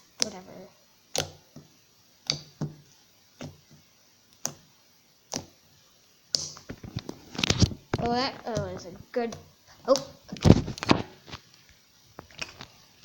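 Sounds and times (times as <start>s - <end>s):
slime clicking and popping: 1.1s - 1.6s, 2.2s - 3.7s, 4.3s - 4.7s, 5.3s - 5.6s, 6.3s - 8.7s.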